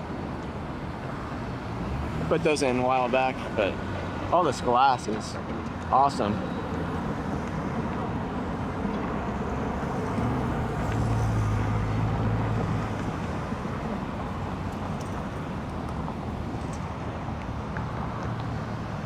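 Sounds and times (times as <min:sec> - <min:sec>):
road traffic noise: 0:00.0 - 0:19.0
vehicle engine passing: 0:09.6 - 0:16.5.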